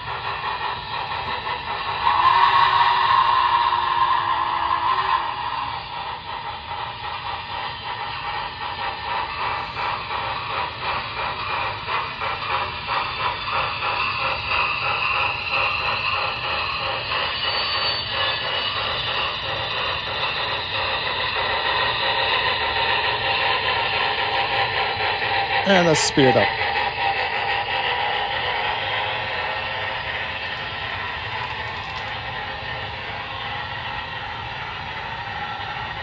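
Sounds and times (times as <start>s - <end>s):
steam locomotive chuffing with hiss: 0.0s - 36.0s.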